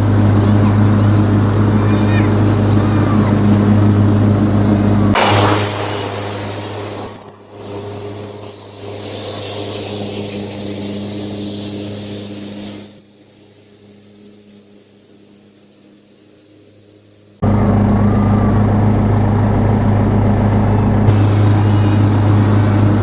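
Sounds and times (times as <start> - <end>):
riding lawn mower engine running: 0.0 - 5.2, 21.0 - 23.0.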